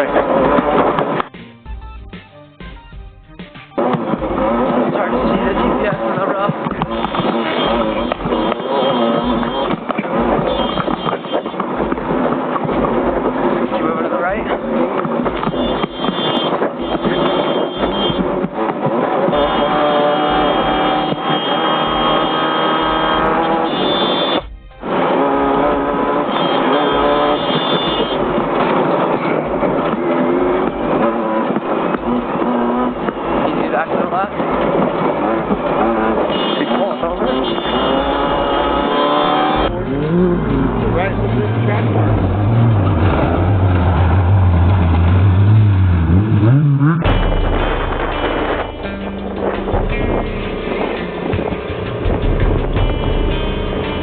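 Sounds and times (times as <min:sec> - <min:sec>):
vehicle engine running under load: 0:03.7 - 0:54.0
low hum: 0:39.7 - 0:54.0.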